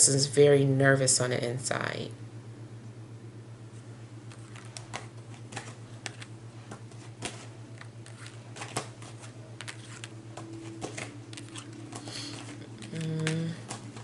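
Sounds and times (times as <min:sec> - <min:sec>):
low electrical hum: 0:00.0 - 0:14.0
cards clicking and snapping: 0:07.2 - 0:14.0.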